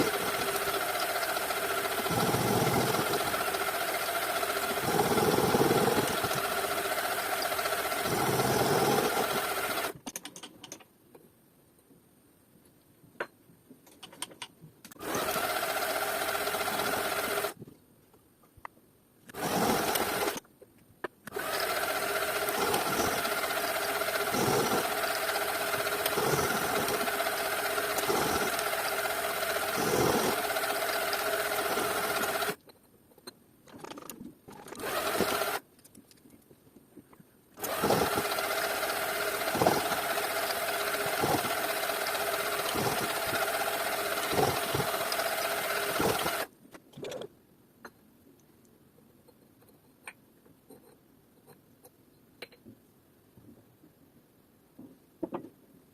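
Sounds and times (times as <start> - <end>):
power tool motor whine: 0.0 - 10.0, 15.0 - 17.6, 19.3 - 20.4, 21.3 - 32.6, 34.7 - 35.6, 37.6 - 46.5
harsh rasp on material: 1.8 - 9.8, 19.4 - 20.4, 21.4 - 32.6, 37.6 - 46.4.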